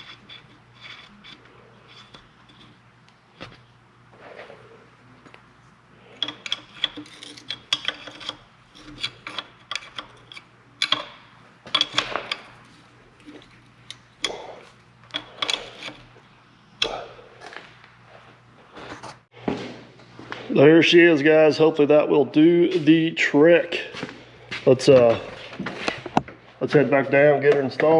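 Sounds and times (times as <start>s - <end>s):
hand tools scraping on metal: 0.0s - 2.8s, 6.0s - 17.7s.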